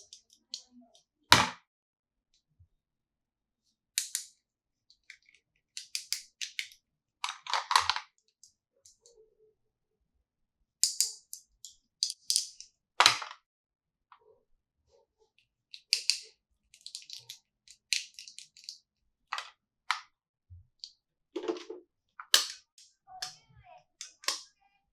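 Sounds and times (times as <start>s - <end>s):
plastic toy pieces clicking: 4.0s - 4.3s, 5.0s - 8.2s, 10.8s - 13.3s, 15.7s - 20.0s, 21.5s - 23.4s, 24.0s - 24.5s
plastic snap: 21.6s - 22.6s, 24.0s - 24.5s.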